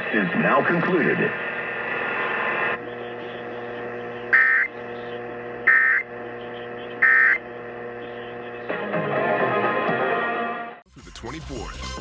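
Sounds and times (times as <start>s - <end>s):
radio programme audio: 0.0s - 8.7s
low broadcast hum: 0.0s - 8.8s
short digital data bursts: 4.3s - 4.8s, 5.6s - 6.1s, 7.0s - 7.4s.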